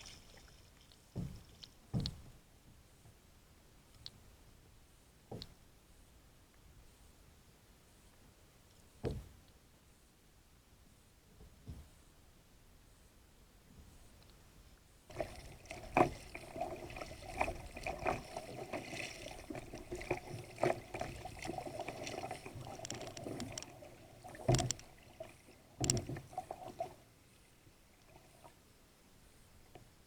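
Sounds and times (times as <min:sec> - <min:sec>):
knocks and clatter on kayak: 0:15.2 - 0:25.0, 0:25.8 - 0:26.9.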